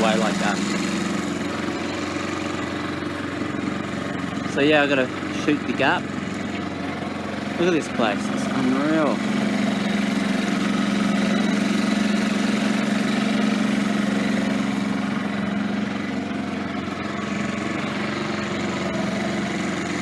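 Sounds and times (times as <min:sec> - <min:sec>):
boat motor humming: 0:00.0 - 0:20.0.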